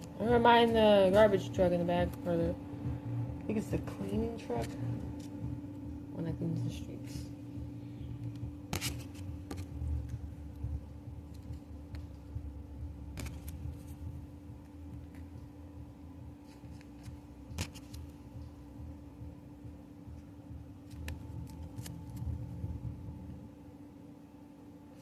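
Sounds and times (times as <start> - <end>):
steady hum: 0.0 - 25.0
trading cards and foil crinkling: 8.3 - 9.7, 20.9 - 22.4.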